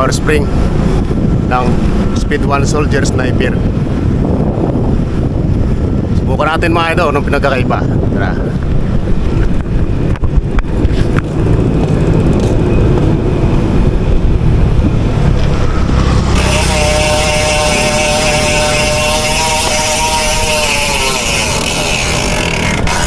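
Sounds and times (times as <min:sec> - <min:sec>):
motorcycle engine rumble: 0:00.0 - 0:06.3, 0:07.9 - 0:23.0
high-pitched whine: 0:09.8 - 0:23.0.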